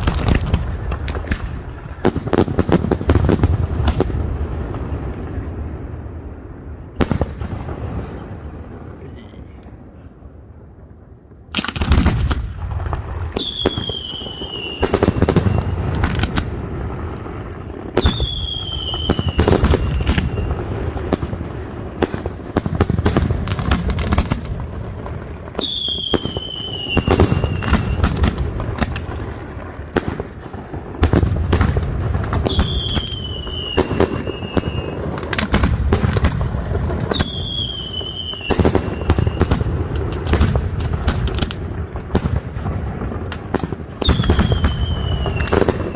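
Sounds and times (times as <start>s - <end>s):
fireworks bangs and crackling: 0.0s - 45.9s
falling firework whistle: 13.3s - 16.3s, 17.9s - 20.7s, 25.6s - 28.3s, 32.3s - 35.4s, 37.0s - 39.7s, 44.0s - 45.9s.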